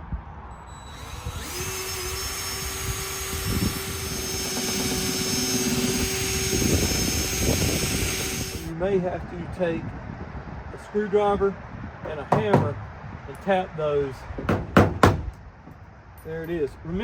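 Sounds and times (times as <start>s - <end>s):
cordless drill whining: 0.7s - 8.7s.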